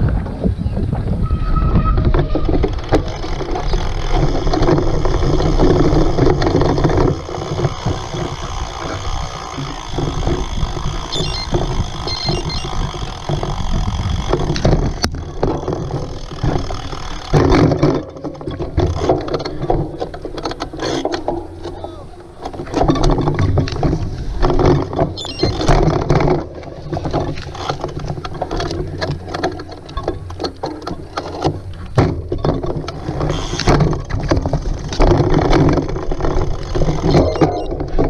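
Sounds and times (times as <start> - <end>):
wind on microphone: 0.0 - 20.4
bike rattling and knocking: 0.0 - 38.0.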